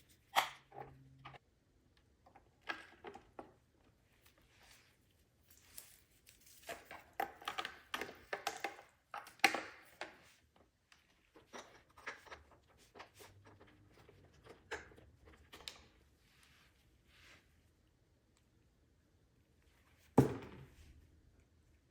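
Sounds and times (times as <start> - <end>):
plastic parts clicking and snapping: 6.7 - 10.3.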